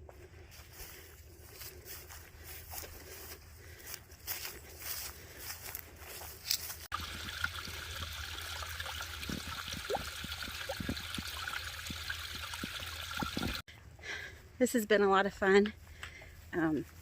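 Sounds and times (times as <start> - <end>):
stream gurgling over rocks: 6.9 - 13.6.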